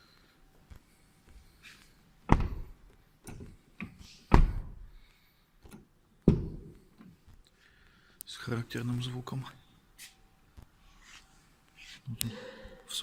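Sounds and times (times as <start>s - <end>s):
car door thunks: 2.3s - 2.8s, 4.3s - 4.8s, 6.3s - 6.7s.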